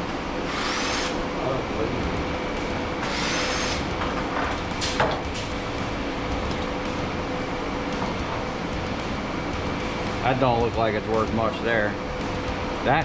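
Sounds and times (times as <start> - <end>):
shop hum: 0.0 - 13.0
power driver whirring: 0.4 - 1.4, 3.0 - 4.0.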